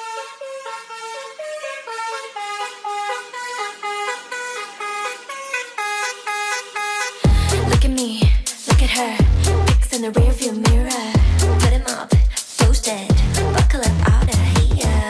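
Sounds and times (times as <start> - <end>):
horn-like honking tune: 0.0 - 7.8
heavy kick drum and bass: 7.2 - 15.0.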